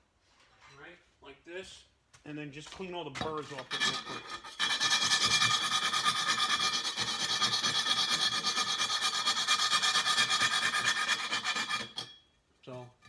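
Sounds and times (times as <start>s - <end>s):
hand file rasping on metal tube: 3.5s - 12.2s.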